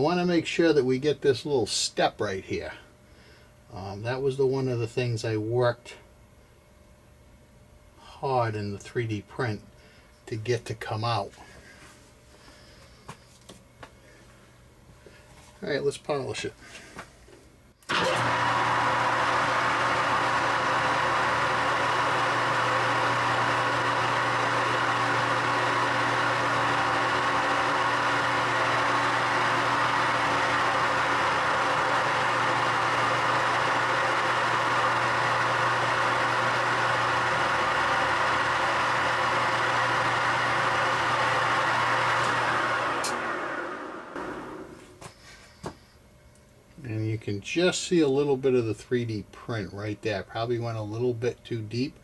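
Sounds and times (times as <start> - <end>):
polishing machine humming: 17.9 - 44.9.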